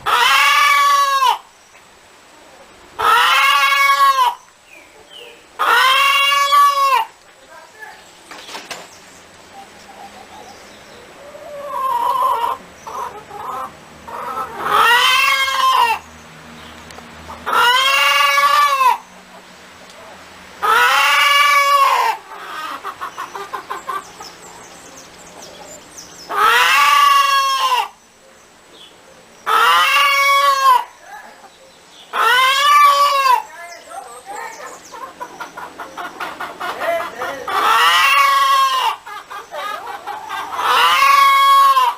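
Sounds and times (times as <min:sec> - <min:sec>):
hen clucking: 0:00.0 - 0:01.5, 0:02.4 - 0:16.1, 0:17.2 - 0:28.0, 0:29.4 - 0:41.9
hen squawking: 0:03.0 - 0:04.5, 0:05.6 - 0:07.1, 0:11.2 - 0:16.0, 0:17.3 - 0:19.0, 0:20.6 - 0:24.4, 0:26.3 - 0:28.0, 0:32.1 - 0:41.9.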